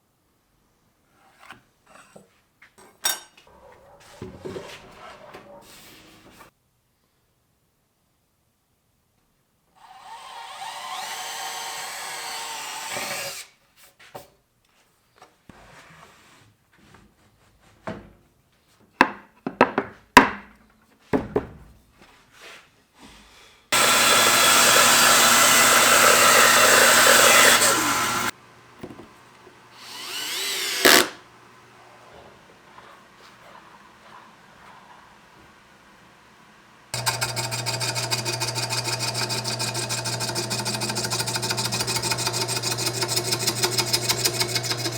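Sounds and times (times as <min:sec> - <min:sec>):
power tools cutting wood: 0:09.8 - 0:13.5, 0:23.7 - 0:28.4, 0:29.7 - 0:31.2, 0:37.0 - 0:44.9.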